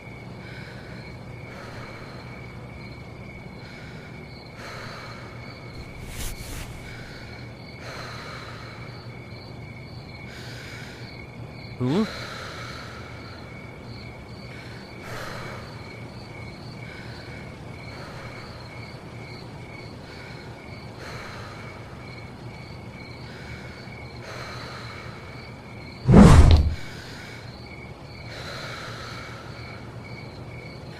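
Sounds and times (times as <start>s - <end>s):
crickets chirping: 0.0s - 26.1s, 26.8s - 30.9s
sudden loud noise: 26.1s - 26.9s.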